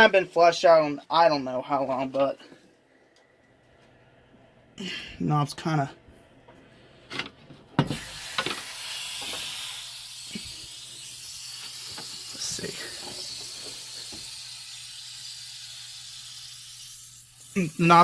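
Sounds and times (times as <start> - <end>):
water hissing through pipes: 7.9 - 18.0.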